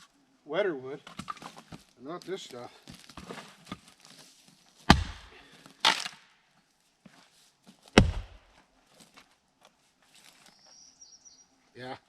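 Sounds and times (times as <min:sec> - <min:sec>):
axe splitting firewood: 0:04.8 - 0:06.2, 0:07.9 - 0:08.5
wood cracking: 0:04.9 - 0:06.2, 0:08.0 - 0:08.4.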